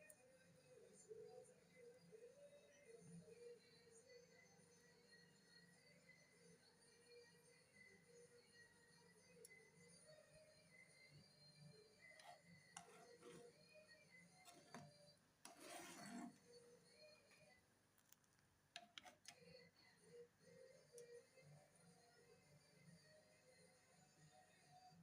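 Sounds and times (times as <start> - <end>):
faint rubbing or scraping: 12.2 - 13.6, 15.5 - 16.4.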